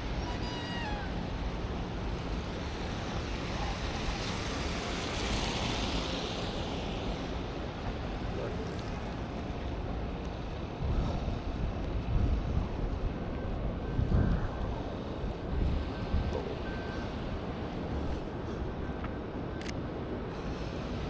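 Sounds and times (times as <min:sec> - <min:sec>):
wind buffeting microphone: 0:10.4 - 0:19.0.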